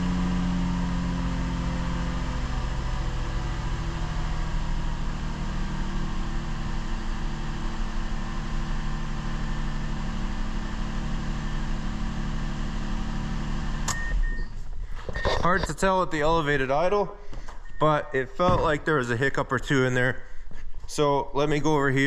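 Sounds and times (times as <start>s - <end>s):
car engine idling: 0.0s - 20.6s.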